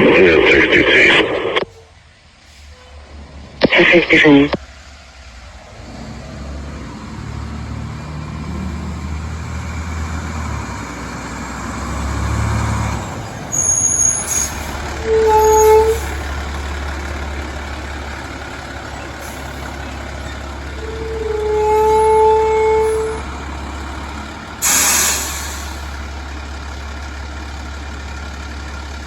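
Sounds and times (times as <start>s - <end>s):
diesel engine revving: 0.0s - 29.0s
fire truck horn blasts: 13.5s - 16.2s, 20.7s - 23.3s.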